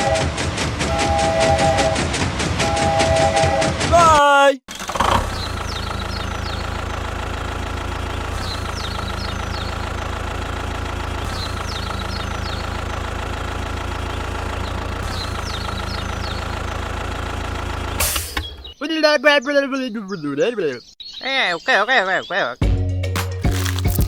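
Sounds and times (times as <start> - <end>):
tractor engine idling: 4.7 - 18.0
birds chirping: 18.5 - 22.6.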